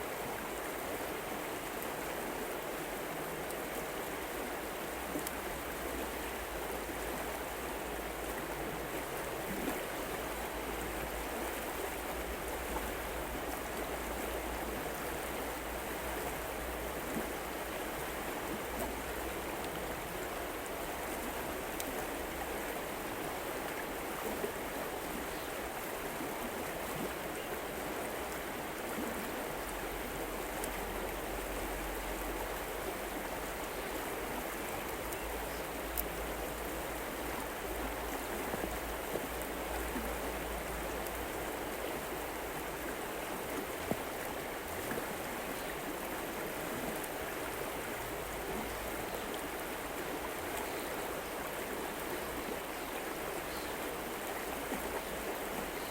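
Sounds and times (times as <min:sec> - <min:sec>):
river water flowing: 0:00.0 - 0:55.9
faint clicks: 0:35.8 - 0:36.2.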